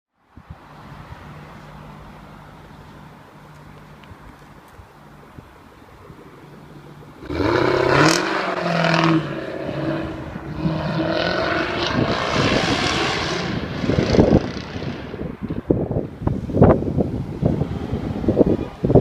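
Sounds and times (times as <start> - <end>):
car engine revving: 7.2 - 15.3.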